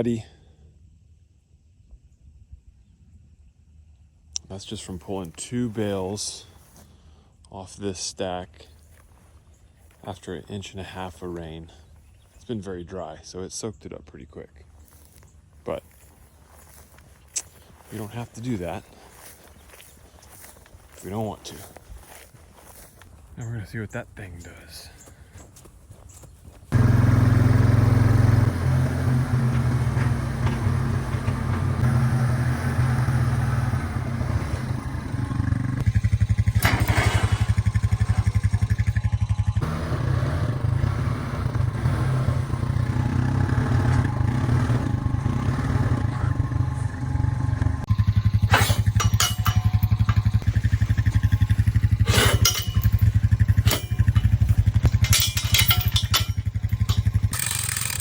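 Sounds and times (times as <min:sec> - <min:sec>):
four-wheeler engine under load: 0:26.7 - 0:58.0
clattering knocks: 0:28.1 - 0:32.5, 0:48.8 - 0:57.4.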